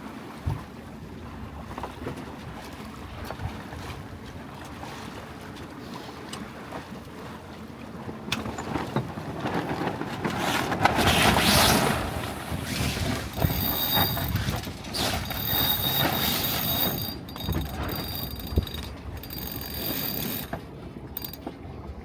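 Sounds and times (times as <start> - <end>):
water splashing against boat: 0.0 - 22.0
wind: 0.0 - 22.0
faint high ringing tone: 15.5 - 20.5.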